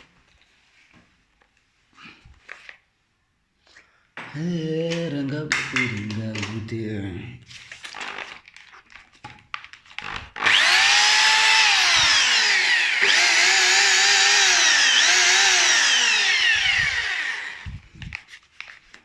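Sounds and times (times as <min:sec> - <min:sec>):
hammer drill motor whining: 0:10.4 - 0:17.9.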